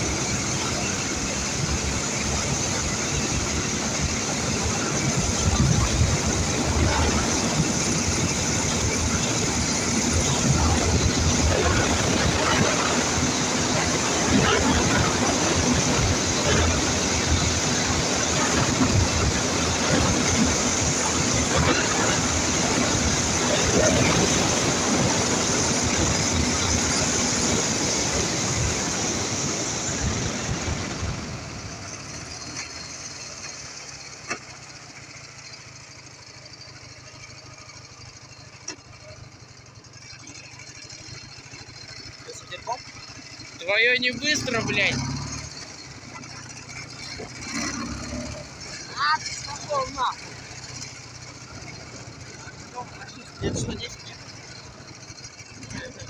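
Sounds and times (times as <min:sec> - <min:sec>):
wind rush on microphone: 0:00.0 - 0:32.0, 0:53.2 - 0:54.1
motorcycle engine running: 0:00.0 - 0:56.0.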